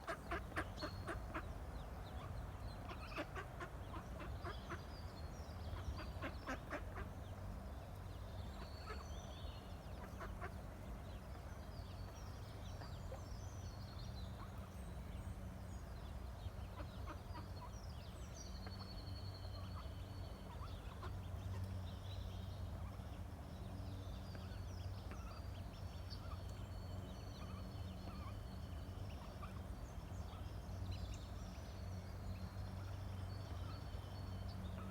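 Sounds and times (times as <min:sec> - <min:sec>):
ducklings peeping: 0:00.0 - 0:05.0, 0:05.6 - 0:07.4, 0:08.5 - 0:14.7, 0:16.4 - 0:17.7.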